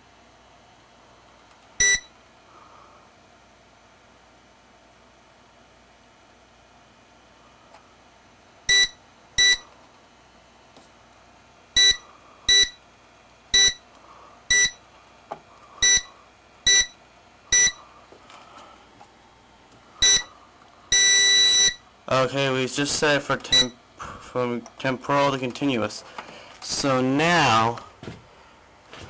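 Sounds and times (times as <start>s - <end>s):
short electronic keypad beeps: 1.8s - 2.1s, 8.7s - 9.6s, 11.8s - 12.8s, 13.6s - 13.8s, 14.5s - 14.8s, 15.8s - 16.1s, 16.7s - 17.8s, 20.0s - 20.3s, 20.9s - 21.8s.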